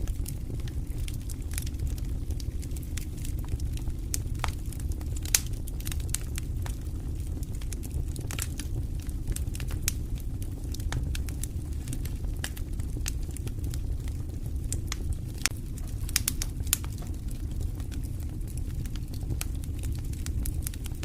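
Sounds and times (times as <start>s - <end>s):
campfire crackling and popping: 0.0s - 21.0s
low fire rumble: 0.0s - 21.0s.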